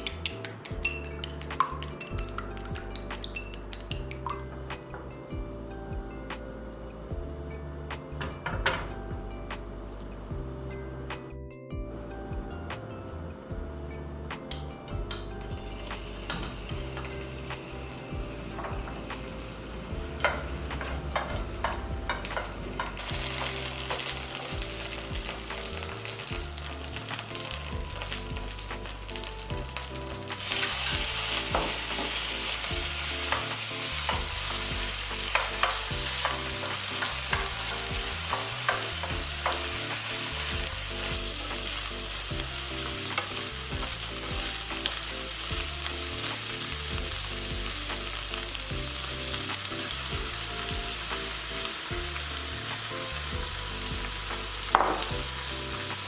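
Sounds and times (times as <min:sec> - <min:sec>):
food sizzling in a pan: 0:15.1 - 0:56.0.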